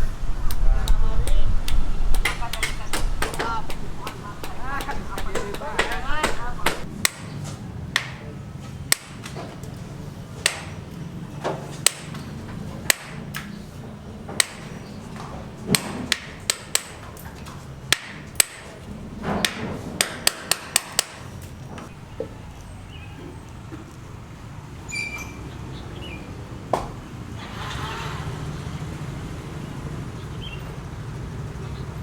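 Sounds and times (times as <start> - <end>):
hammer blows: 0.0 - 9.6, 10.4 - 17.2.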